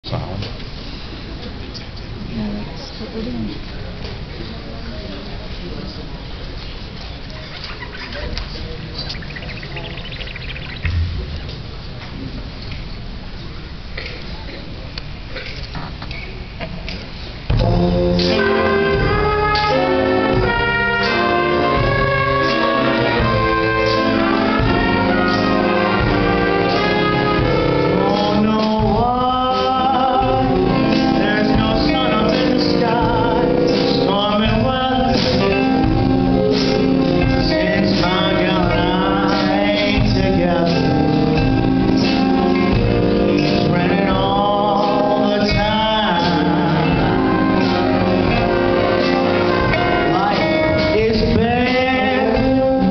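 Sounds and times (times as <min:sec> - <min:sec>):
instrumental accompaniment: 0:17.5 - 0:52.9
person singing with vibrato: 0:17.6 - 0:19.9.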